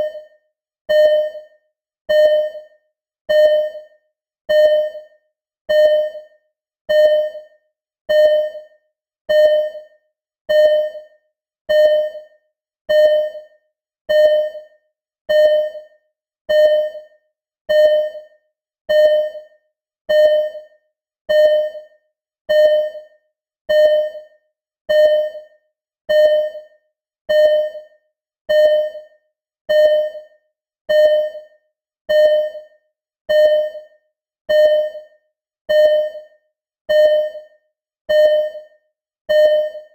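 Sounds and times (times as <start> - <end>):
heart monitor beeping: 0.0 - 0.3, 0.9 - 1.5, 2.1 - 2.7, 3.3 - 3.9, 4.5 - 5.1, 5.7 - 6.3, 6.9 - 7.5, 8.1 - 8.7, 9.3 - 9.9, 10.5 - 11.1, 11.7 - 12.3, 12.9 - 13.5, 14.1 - 14.7, 15.3 - 15.9, 16.5 - 17.1, 17.7 - 18.3, 18.9 - 19.5, 20.1 - 20.7, 21.3 - 21.9, 22.5 - 23.1, 23.7 - 24.3, 24.9 - 25.5, 26.1 - 26.7, 27.3 - 27.9, 28.5 - 29.1, 29.7 - 30.3, 30.9 - 31.5, 32.1 - 32.7, 33.3 - 33.9, 34.5 - 35.1, 35.7 - 36.3, 36.9 - 37.5, 38.1 - 38.7, 39.3 - 39.9.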